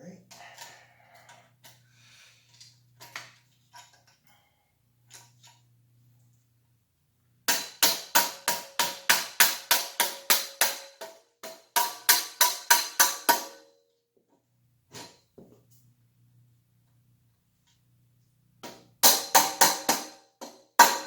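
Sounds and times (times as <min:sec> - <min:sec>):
faint clicks of parts handled: 0:02.5 - 0:04.3.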